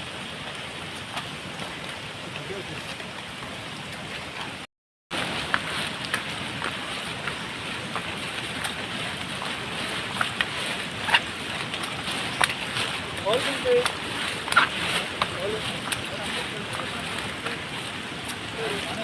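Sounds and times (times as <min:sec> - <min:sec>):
sharp water splashes: 0:00.0 - 0:19.0
waterfall rushing: 0:05.2 - 0:19.0.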